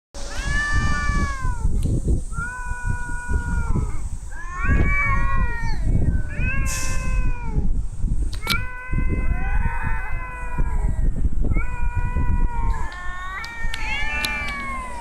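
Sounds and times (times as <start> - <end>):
cat yowling meows: 0.2 - 7.7, 8.4 - 15.0
sharp click: 8.3 - 8.7
low rumble: 12.6 - 15.0.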